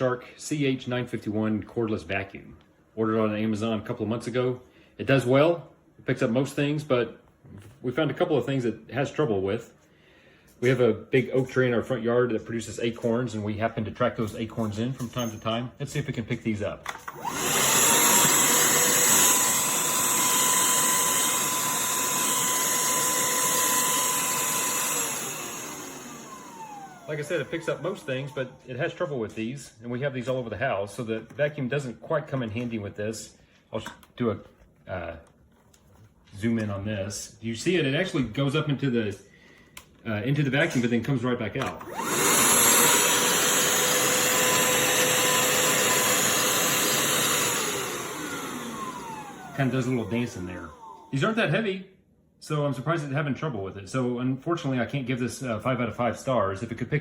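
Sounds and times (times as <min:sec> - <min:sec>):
handheld vacuum whining: 0:16.9 - 0:29.3, 0:41.6 - 0:51.5
vacuum motor winding down: 0:17.0 - 0:29.0, 0:41.6 - 0:51.4.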